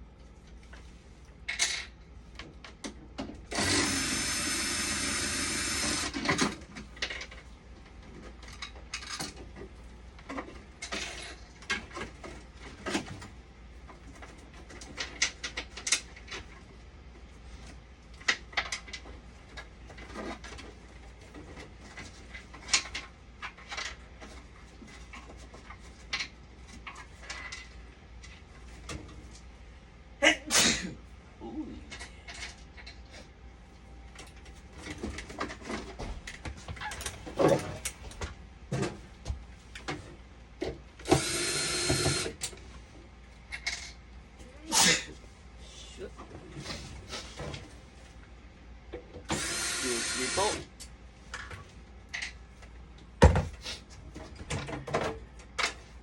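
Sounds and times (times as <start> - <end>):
small power tool running: 3.5 - 6.2, 41.1 - 42.4, 49.3 - 50.6.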